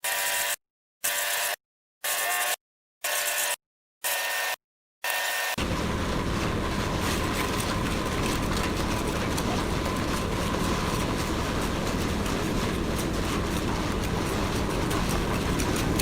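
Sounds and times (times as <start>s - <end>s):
concrete mixer running: 5.6s - 16.0s.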